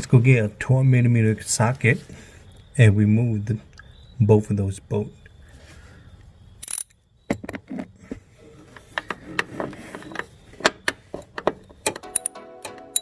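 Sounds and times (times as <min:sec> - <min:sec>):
background music: 0:12.0 - 0:13.0.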